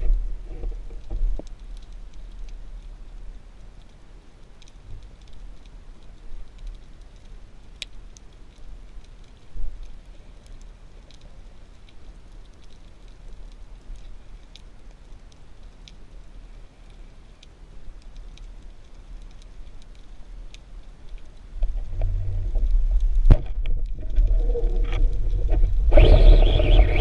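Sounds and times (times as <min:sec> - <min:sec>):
faint underwater hiss with clicks: 0:00.0 - 0:25.8
sharp crack: 0:23.2 - 0:27.0
loud low rumble: 0:23.9 - 0:27.0.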